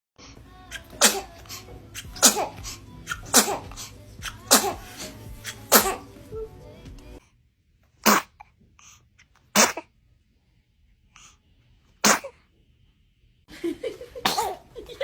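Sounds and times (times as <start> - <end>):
baby sneezing: 0.7 - 6.2, 8.0 - 8.4, 9.5 - 9.9, 12.0 - 12.4, 14.2 - 14.6.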